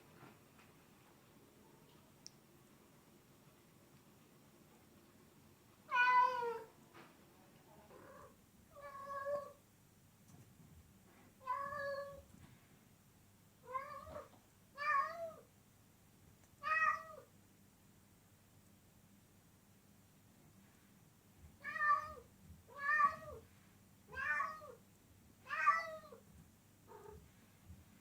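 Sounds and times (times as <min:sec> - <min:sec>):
cat meowing: 0:05.9 - 0:06.7, 0:07.9 - 0:09.6, 0:11.4 - 0:12.2, 0:13.6 - 0:15.4, 0:16.6 - 0:17.3, 0:21.6 - 0:23.4, 0:24.1 - 0:24.8, 0:25.5 - 0:26.2, 0:26.9 - 0:27.2.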